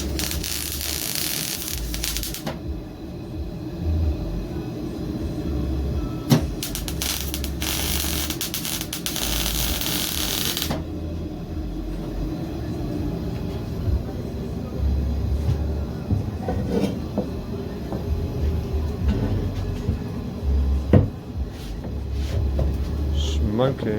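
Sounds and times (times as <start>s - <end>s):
welding arc crackling and hissing: 0.0s - 2.6s, 6.3s - 10.9s
low rumble: 0.0s - 16.5s.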